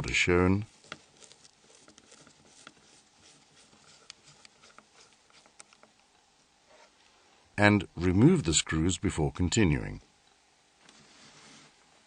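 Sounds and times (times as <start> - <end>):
faint hiss: 0.0 - 12.0
small faint clicks: 4.0 - 6.2.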